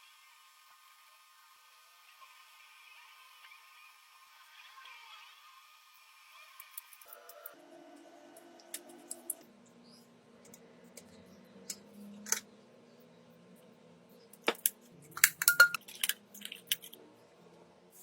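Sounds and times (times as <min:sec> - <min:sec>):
small hard objects clicking: 0:14.4 - 0:17.0.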